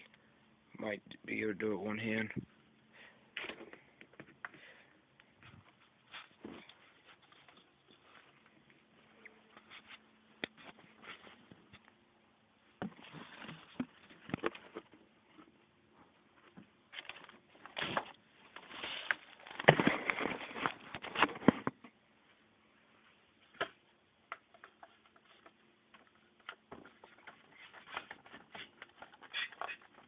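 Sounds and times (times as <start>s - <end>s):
clicks taps and rustling of parts: 23.5s - 30.0s.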